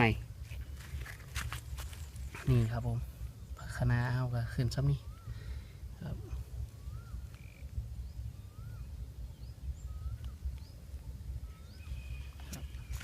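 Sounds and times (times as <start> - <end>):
wind on microphone: 0.0 - 13.0
bird whistling: 5.0 - 5.5, 6.7 - 10.8, 11.4 - 13.0
high bird chirps: 6.6 - 13.0.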